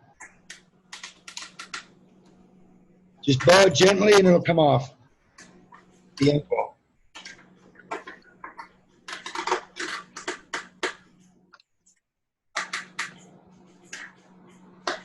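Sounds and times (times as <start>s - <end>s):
steady low hum: 0.0s - 11.5s, 12.6s - 15.0s.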